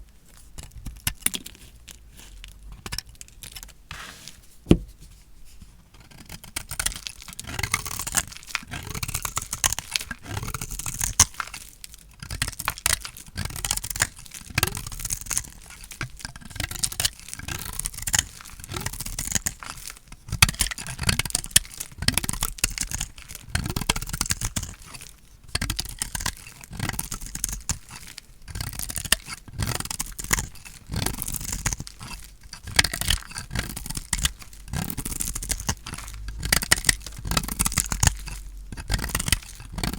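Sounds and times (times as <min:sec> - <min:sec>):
blade cutting dry soap: 0:00.6 - 0:05.1, 0:20.6 - 0:39.9.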